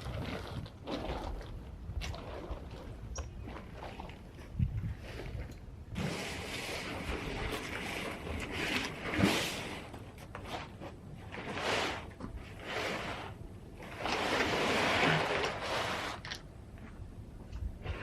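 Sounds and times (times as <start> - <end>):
wind on microphone: 0.0 - 9.8, 17.4 - 18.0.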